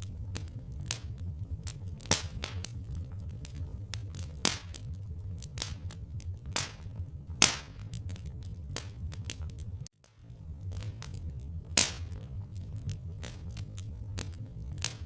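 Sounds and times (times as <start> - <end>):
loud pops from fire: 0.0 - 15.0
steady low rumble: 0.0 - 15.0
wood fire crackling: 0.0 - 15.0.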